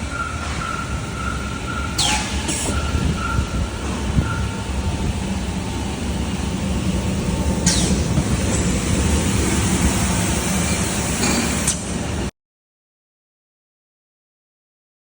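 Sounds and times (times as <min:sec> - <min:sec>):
sudden sharp machine sounds: 0:00.0 - 0:05.2, 0:07.4 - 0:12.1.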